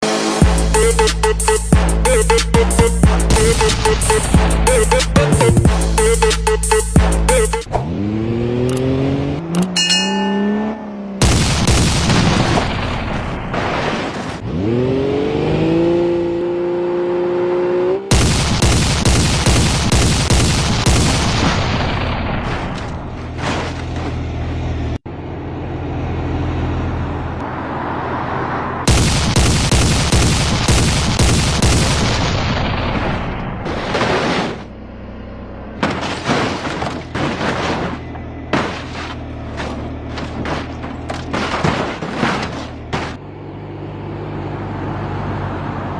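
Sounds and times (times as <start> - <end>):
music: 0.0 - 7.7.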